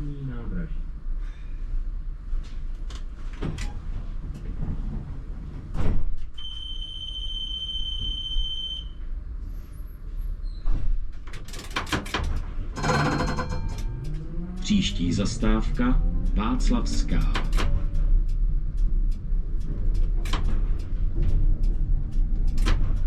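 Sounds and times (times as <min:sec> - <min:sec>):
heavy tram door clunks: 0:02.5 - 0:06.5, 0:10.6 - 0:14.2, 0:16.4 - 0:18.2, 0:19.6 - 0:23.0
high warning beep: 0:06.4 - 0:09.0, 0:12.8 - 0:14.3.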